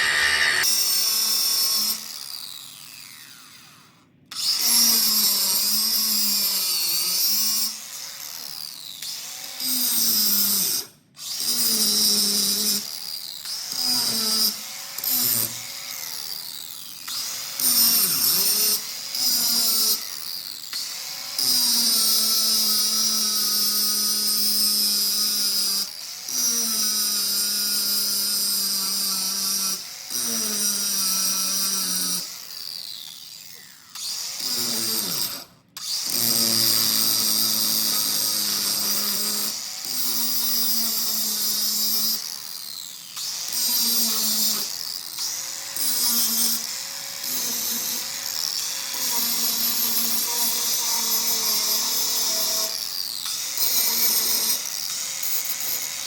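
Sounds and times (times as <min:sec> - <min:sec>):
electric power tool motor whine: 0:00.0 - 0:56.0.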